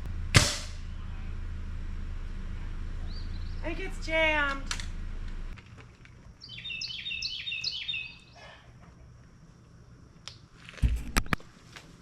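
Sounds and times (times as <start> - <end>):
sharp knocks: 0.4 - 0.8
songbird whistling: 6.4 - 8.4.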